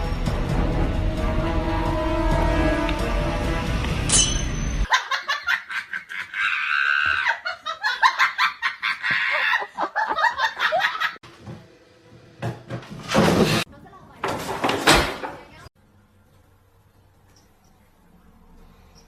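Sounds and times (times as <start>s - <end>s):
music: 0.0s - 4.8s
person laughing hard: 4.9s - 11.2s.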